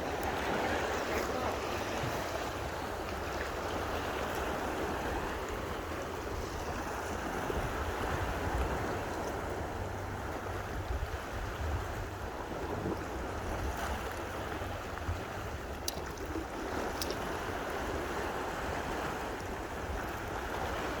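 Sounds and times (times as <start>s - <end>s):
flowing water rushing: 0.0s - 21.0s
wind rumble on microphone: 0.0s - 21.0s.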